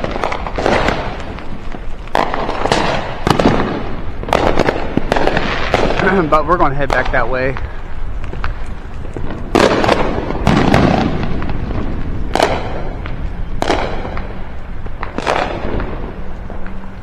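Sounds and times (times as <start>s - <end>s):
fireworks bangs: 0.0s - 17.0s
low rumble: 0.0s - 17.0s.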